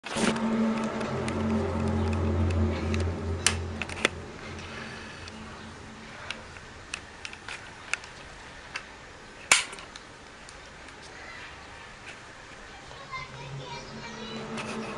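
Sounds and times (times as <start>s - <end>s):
low droning hum: 0.0s - 9.3s, 11.8s - 14.9s
faint clicks and ticks: 6.2s - 11.2s.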